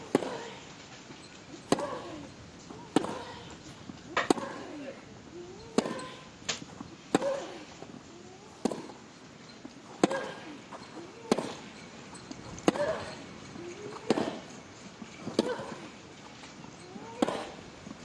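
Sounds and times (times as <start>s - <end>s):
tennis ball hit by racket: 1.6s - 2.2s, 2.9s - 3.4s, 4.2s - 4.7s, 5.8s - 7.6s, 8.6s - 9.0s, 10.0s - 10.5s, 11.2s - 11.7s, 12.6s - 13.2s, 13.8s - 14.5s, 17.2s - 17.6s.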